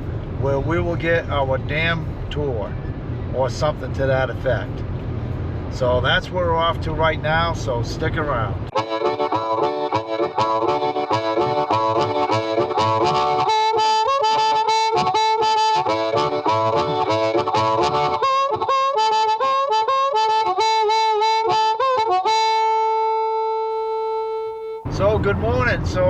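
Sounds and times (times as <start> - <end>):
rhythmic backing music: 8.7 - 23.0
blues harmonica: 8.7 - 24.9.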